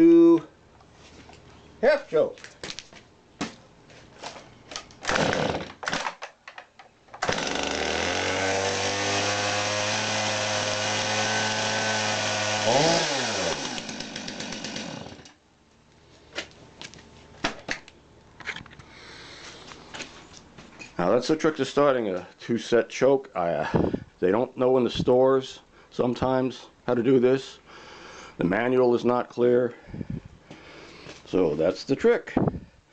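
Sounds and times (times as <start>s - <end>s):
chainsaw engine running: 5.0s - 5.7s, 7.2s - 15.4s.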